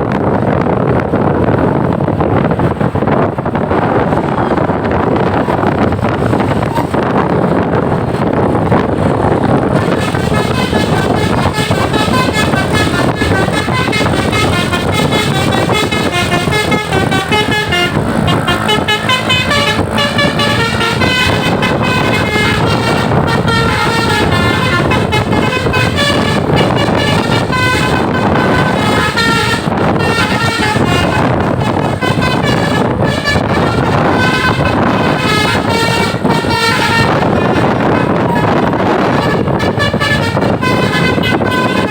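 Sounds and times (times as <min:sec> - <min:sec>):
steady loud noise: 0:00.0 - 0:41.9
multi-tone air horn playing a tune: 0:09.0 - 0:41.9.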